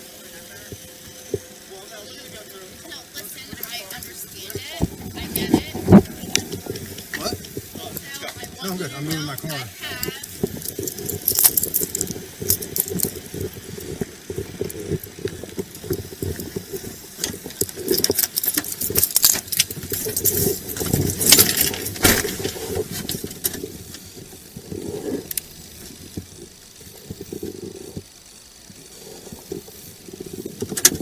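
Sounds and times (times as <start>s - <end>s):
gear jangling and rustling: 10.2s - 25.4s.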